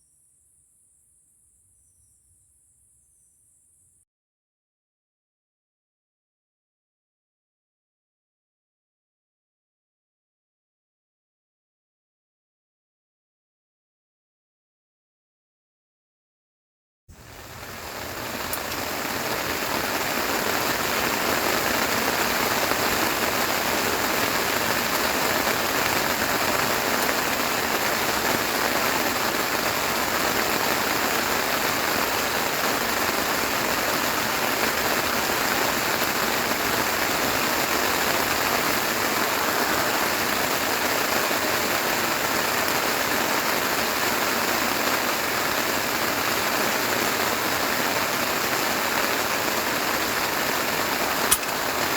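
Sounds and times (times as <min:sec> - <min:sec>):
dense rain falling: 0:17.1 - 0:51.9.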